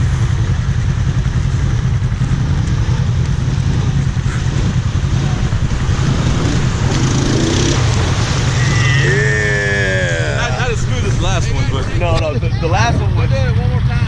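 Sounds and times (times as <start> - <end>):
engine running steadily: 0.0 - 14.0.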